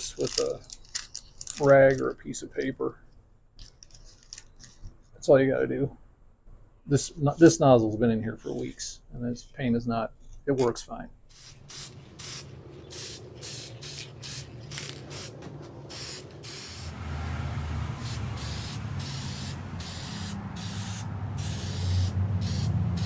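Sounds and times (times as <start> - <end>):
spray paint can hissing: 11.3 - 17.2, 18.0 - 23.0.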